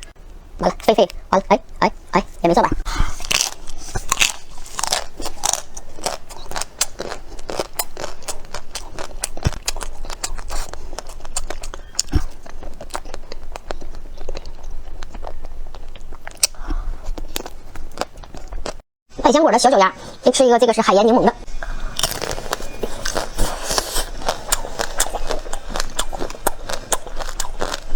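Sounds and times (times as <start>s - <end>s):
chewing: 0.0s - 18.8s, 21.5s - 27.9s
chocolate shell crunching: 3.1s - 18.8s, 21.9s - 27.9s.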